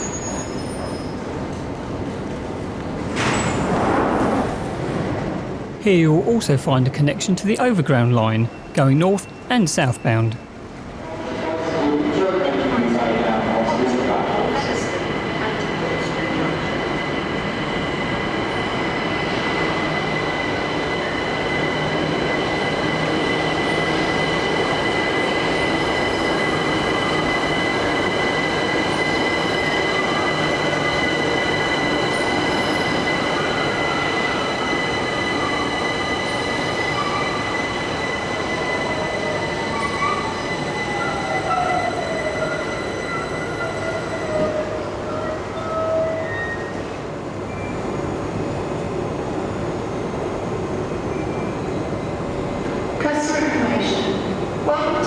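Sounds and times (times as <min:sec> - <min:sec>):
wheel squeal: 0:00.0 - 0:01.3
electric train whine: 0:10.3 - 0:55.0.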